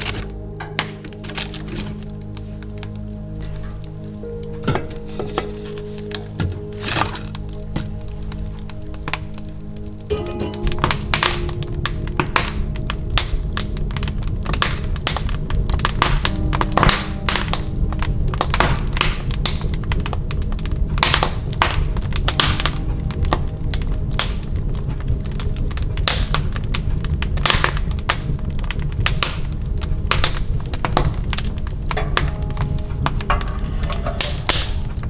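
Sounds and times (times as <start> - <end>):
soft background music: 0.0 - 35.0.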